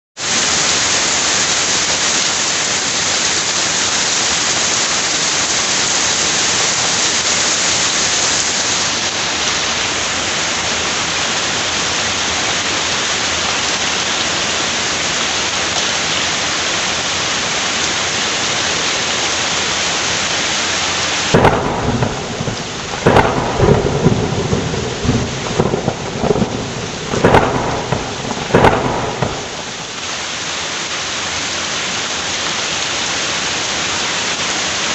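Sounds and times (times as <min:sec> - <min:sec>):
heavy rain falling: 0:00.2 - 0:34.9
thunder cracks and rumbles: 0:21.4 - 0:30.0.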